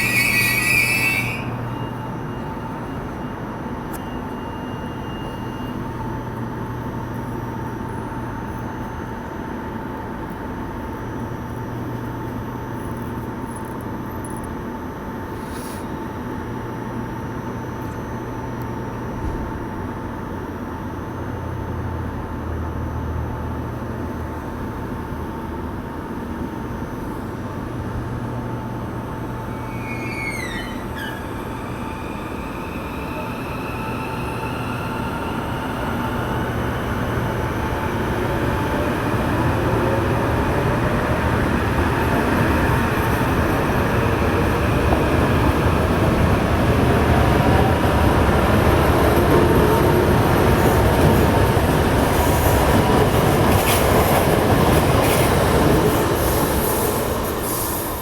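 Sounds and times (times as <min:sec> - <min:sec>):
train rumbling past: 0:00.0 - 0:09.9, 0:21.3 - 0:58.0.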